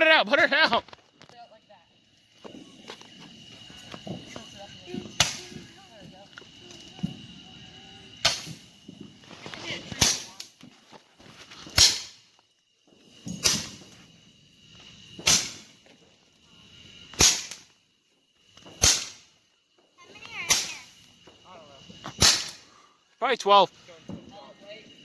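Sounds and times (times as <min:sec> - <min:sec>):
firework bangs with echo: 0:04.0 - 0:06.2, 0:08.2 - 0:09.2, 0:09.8 - 0:10.6, 0:11.7 - 0:12.3, 0:13.2 - 0:14.0, 0:15.2 - 0:15.8, 0:17.1 - 0:17.7, 0:18.6 - 0:19.3, 0:20.1 - 0:21.0, 0:22.0 - 0:22.7.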